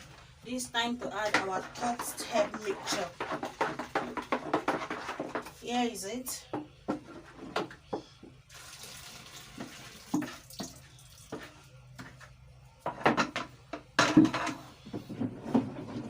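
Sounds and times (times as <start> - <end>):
liquid pouring into bowl: 8.5 - 11.4.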